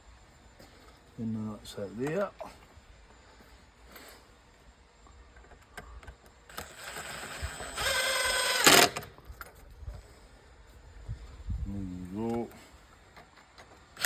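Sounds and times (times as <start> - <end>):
cordless drill whining: 6.5 - 9.1.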